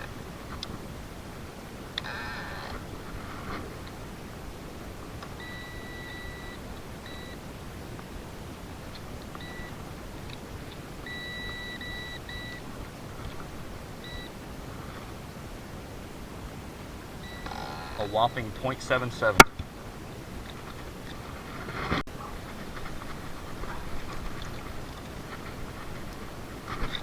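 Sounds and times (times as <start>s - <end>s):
digital scale beeping: 5.4s - 7.4s, 9.4s - 9.8s, 11.1s - 12.6s, 14.0s - 14.3s, 17.2s - 18.4s.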